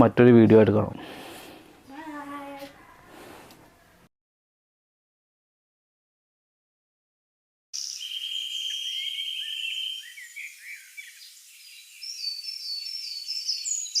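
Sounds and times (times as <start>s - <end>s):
animal chirps: 7.8s - 14.0s.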